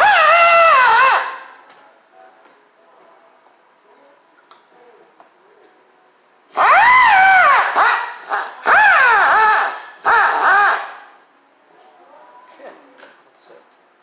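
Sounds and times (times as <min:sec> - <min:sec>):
grinder whining on metal: 0:00.0 - 0:01.5, 0:06.6 - 0:11.1.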